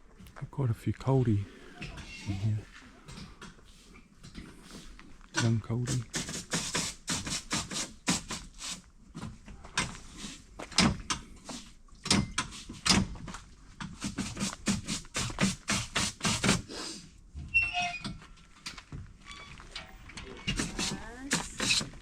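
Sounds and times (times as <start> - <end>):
brisk footsteps on walking track: 0.0 - 1.4, 2.6 - 16.5.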